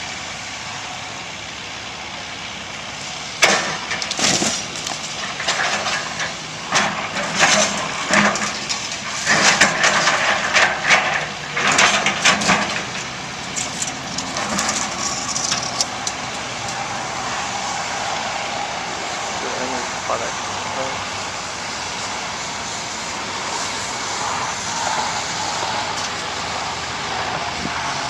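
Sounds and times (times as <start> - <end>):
diesel engine running: 0.0 - 28.0
concrete crashing into steel container: 3.4 - 15.9.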